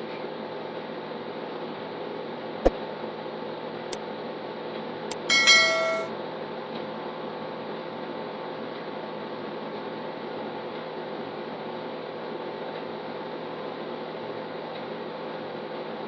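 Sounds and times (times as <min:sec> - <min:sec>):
background hum: 0:05.1 - 0:06.1
bell-like chime: 0:05.3 - 0:06.1.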